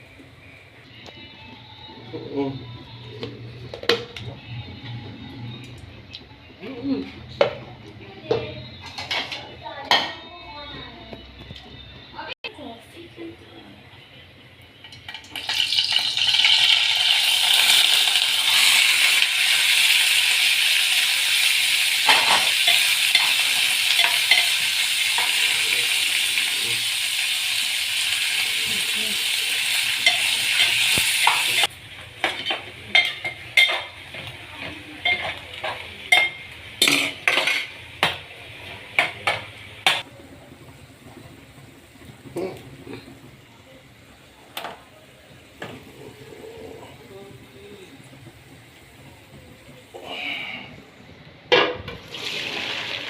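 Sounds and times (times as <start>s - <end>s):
food sizzling in a pan: 14.7s - 51.1s, 51.9s - 53.0s.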